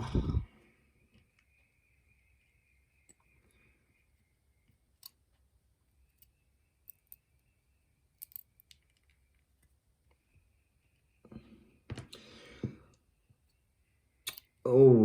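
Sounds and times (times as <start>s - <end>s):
faint metallic clicks of lock parts: 4.6s - 7.4s, 8.1s - 10.2s, 14.3s - 14.6s.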